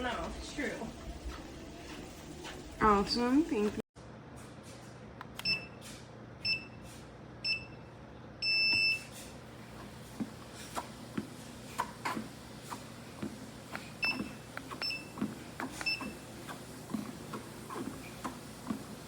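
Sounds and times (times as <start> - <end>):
treadmill electronic beeps: 5.4 - 5.8, 6.4 - 9.1, 12.0 - 19.0.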